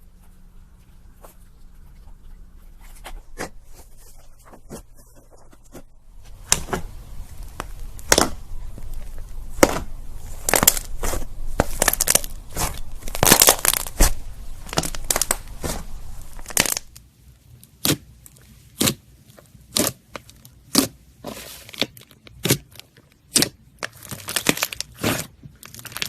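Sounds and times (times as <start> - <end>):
slime squished by hand: 5.7 - 17.0, 17.8 - 26.0
sticky pops and crackles: 5.7 - 17.0, 21.7 - 26.0.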